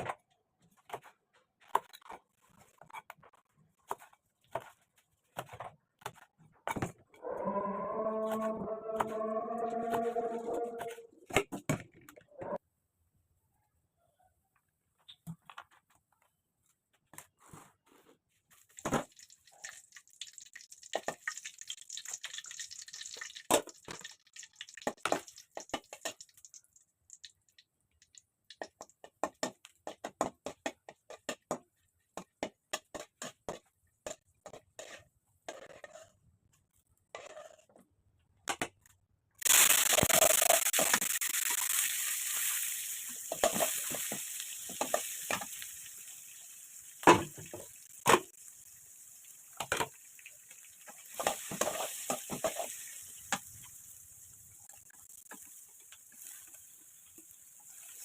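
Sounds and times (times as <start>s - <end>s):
food sizzling in hot pan: 19.1s - 27.3s, 39.4s - 58.0s.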